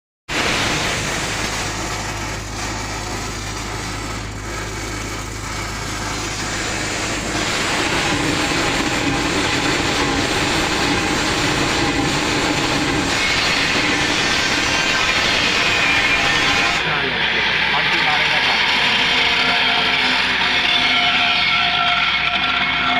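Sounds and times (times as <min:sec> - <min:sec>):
welding arc crackling: 0:00.3 - 0:16.8
low hum: 0:00.3 - 0:21.0.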